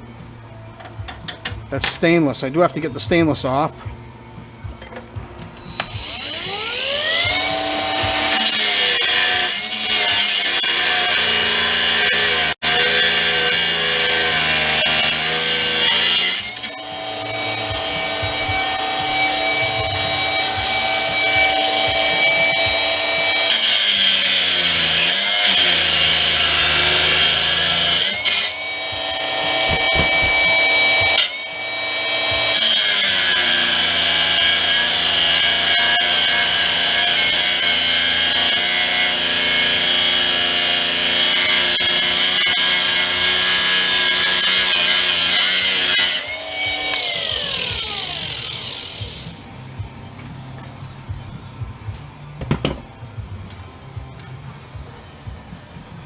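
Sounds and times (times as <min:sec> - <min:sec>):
power tool cutting metal: 0:05.6 - 0:49.4.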